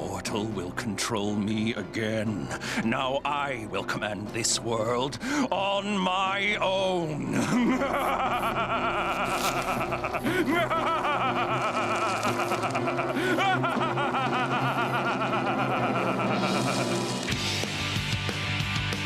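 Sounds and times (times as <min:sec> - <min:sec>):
background music: 0:00.0 - 0:19.0
man laughing villainously: 0:07.2 - 0:17.5.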